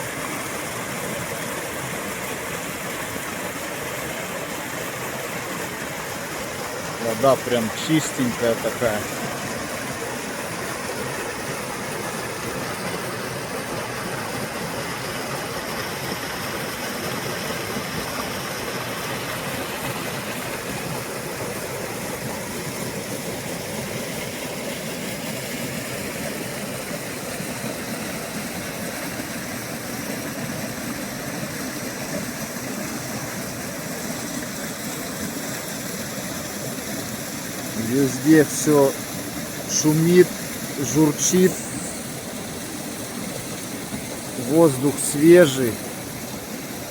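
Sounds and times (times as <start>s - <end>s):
stream babbling and gurgling: 0.0s - 46.9s.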